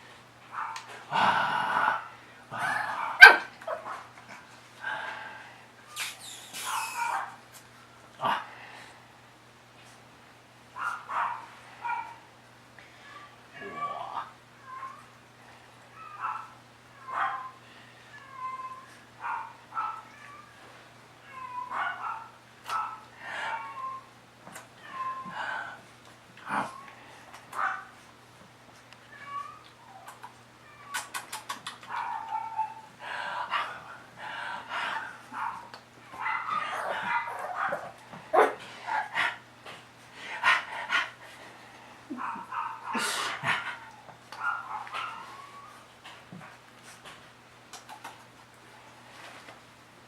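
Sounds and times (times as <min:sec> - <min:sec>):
puppy yelp: 0:03.2 - 0:03.5, 0:06.0 - 0:07.4
puppies whining and yipping: 0:05.9 - 0:07.3, 0:44.4 - 0:45.9.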